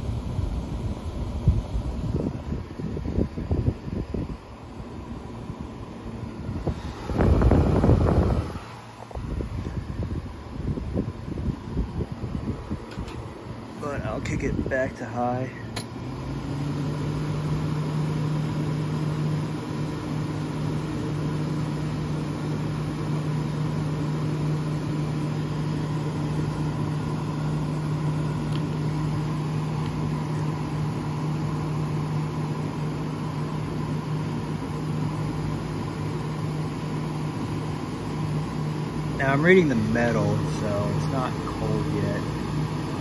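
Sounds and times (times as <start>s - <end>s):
air conditioner motor hum: 0.0s - 43.0s
rush of air: 5.3s - 13.9s.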